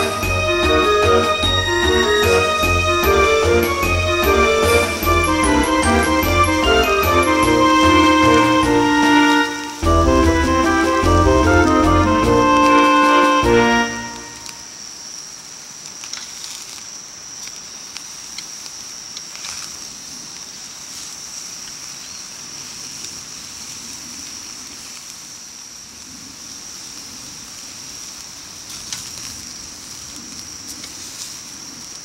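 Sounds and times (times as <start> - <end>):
high-pitched drone: 0.0 - 14.7
small crackles and clicks: 14.5 - 26.3, 27.5 - 32.0.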